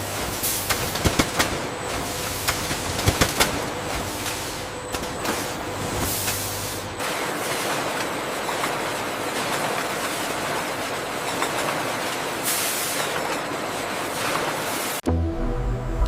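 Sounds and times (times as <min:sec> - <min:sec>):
mechanical hiss with faint ticks: 0:00.2 - 0:01.6
music: 0:15.0 - 0:16.0.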